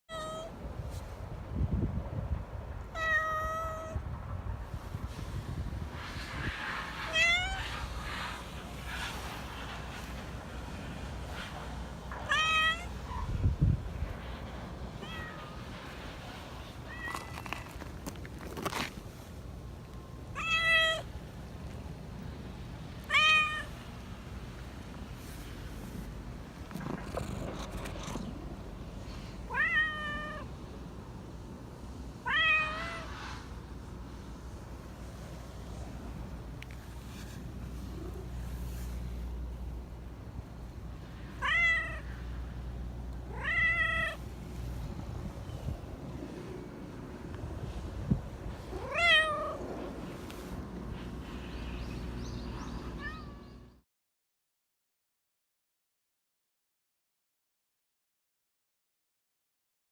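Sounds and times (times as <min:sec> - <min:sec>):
cat meowing: 0:00.1 - 0:00.5, 0:02.9 - 0:04.0, 0:07.1 - 0:07.6, 0:12.3 - 0:12.9, 0:15.0 - 0:15.5, 0:20.4 - 0:21.1, 0:23.0 - 0:23.8, 0:29.5 - 0:30.5, 0:32.2 - 0:33.1, 0:41.4 - 0:42.1, 0:43.3 - 0:44.2, 0:48.7 - 0:49.6, 0:53.0 - 0:53.6
faint rustling: 0:36.5 - 0:39.7.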